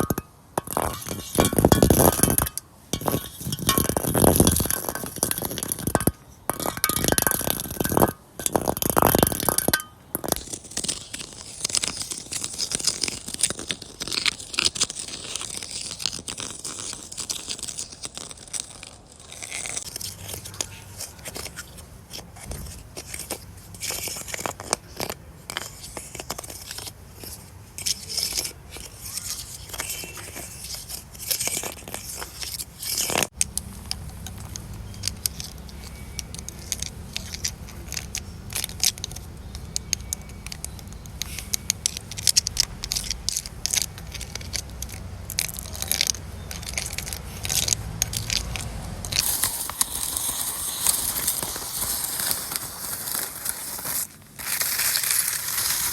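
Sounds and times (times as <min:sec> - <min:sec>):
tree bark being scraped: 0:41.2 - 0:55.9.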